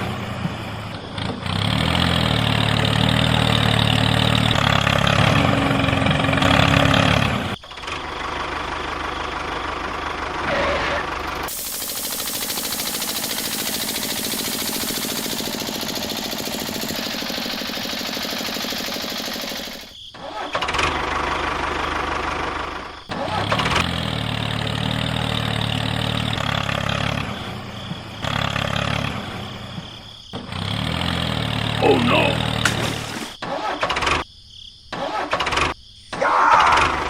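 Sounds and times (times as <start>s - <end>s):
fast buzzing engine: 10.3s - 20.0s.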